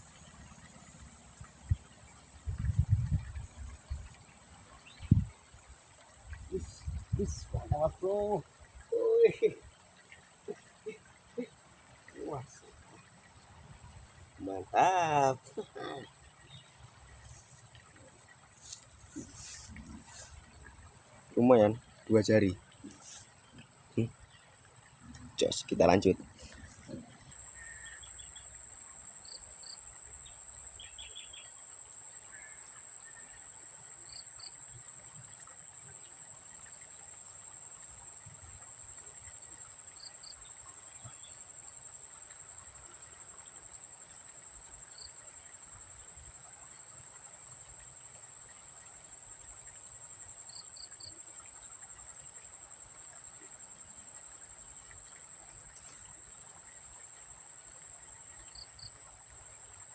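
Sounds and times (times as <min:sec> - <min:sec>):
insect double chirp: 0:00.0 - 0:59.9
high-pitched insect trilling: 0:06.4 - 0:09.7, 0:10.5 - 0:24.4.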